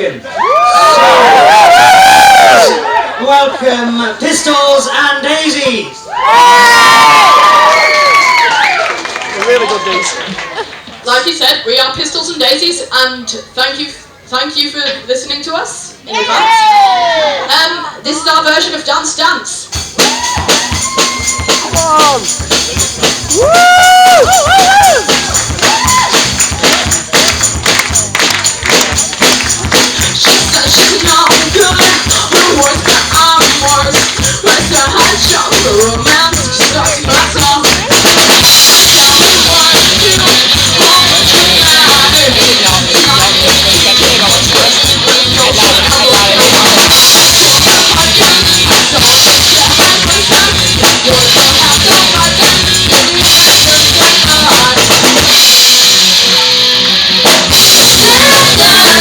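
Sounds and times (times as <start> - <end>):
live band playing pop-rock: 19.0 - 59.0
drum beat: 19.6 - 59.0
person singing: 29.8 - 55.2, 56.1 - 59.0.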